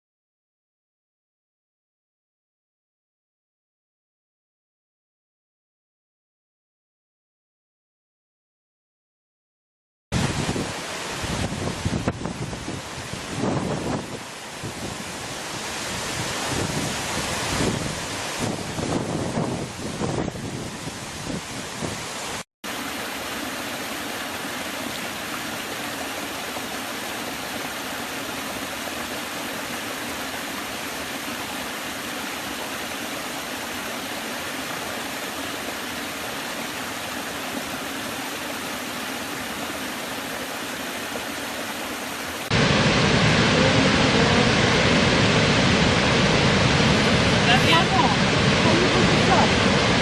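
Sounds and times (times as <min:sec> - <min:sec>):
waterfall rushing: 0:10.2 - 0:50.0.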